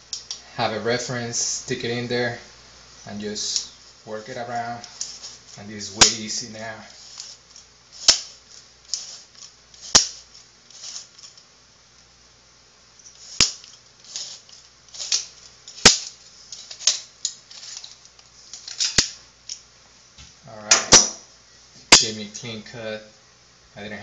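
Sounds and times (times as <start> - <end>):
pipe cutter scraping: 8.0 - 11.4, 13.1 - 19.0.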